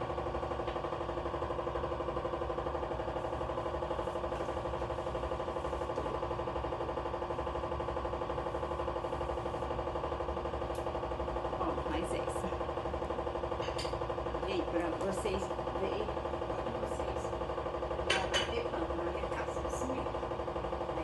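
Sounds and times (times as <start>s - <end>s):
motor humming with fast pulsing: 0.0s - 21.0s.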